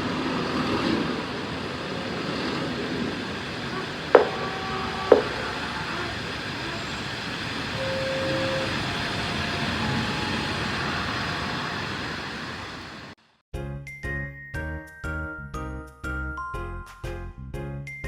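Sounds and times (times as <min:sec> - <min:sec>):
traffic hiss: 0:00.0 - 0:13.2
vehicle passing: 0:00.0 - 0:13.2
sharp knock: 0:04.2 - 0:05.4.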